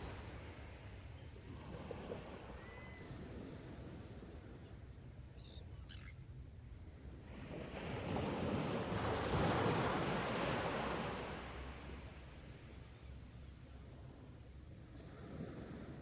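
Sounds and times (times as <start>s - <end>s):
faint bird calls: 2.5s - 3.2s, 5.3s - 6.2s.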